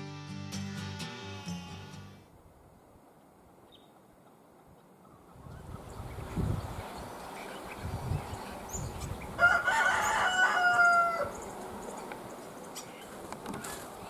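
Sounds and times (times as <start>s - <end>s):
rooster crowing: 9.4s - 11.4s.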